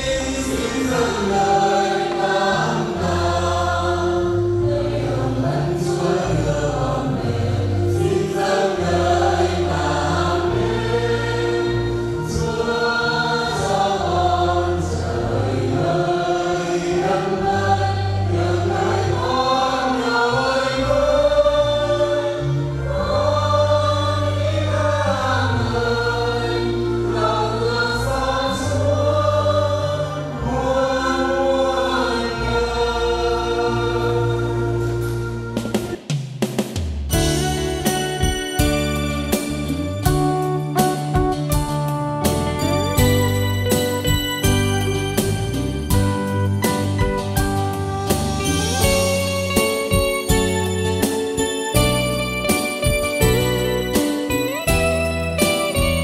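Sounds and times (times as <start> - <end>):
choir singing a hymn: 0.0 - 36.0
long held bass notes: 0.0 - 36.0, 37.1 - 51.1, 51.8 - 56.0.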